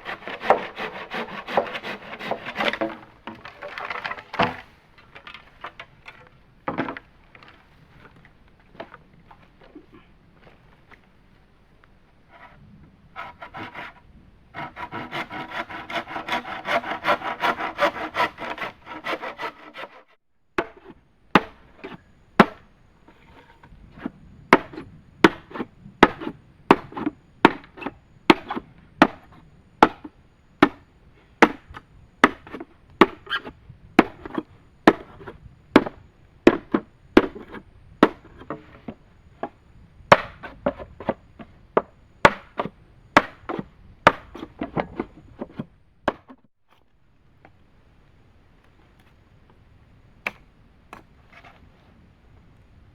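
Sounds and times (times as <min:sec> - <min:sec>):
hand saw cutting wood: 0:00.0 - 0:03.1, 0:13.2 - 0:14.0, 0:14.6 - 0:21.6
chopping blows on wood: 0:24.5 - 0:30.8, 0:40.1 - 0:41.2, 0:41.8 - 0:45.0.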